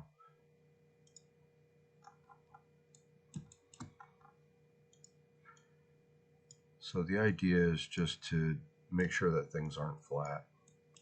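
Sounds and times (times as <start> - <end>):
low electrical hum: 0.0 - 11.0
computer mouse and keyboard clicks: 1.0 - 1.3, 2.0 - 5.7, 10.2 - 11.0.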